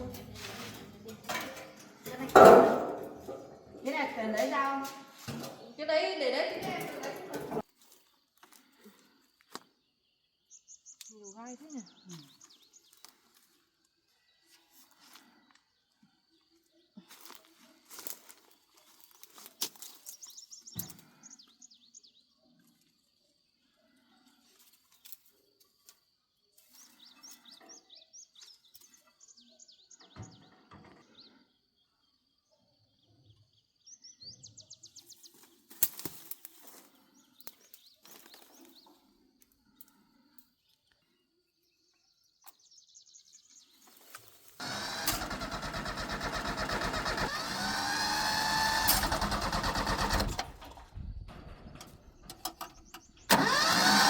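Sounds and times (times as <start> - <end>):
birds chirping: 8.7 - 13.6, 44.6 - 54.0
loud engine revving: 44.6 - 50.8, 53.3 - 54.0.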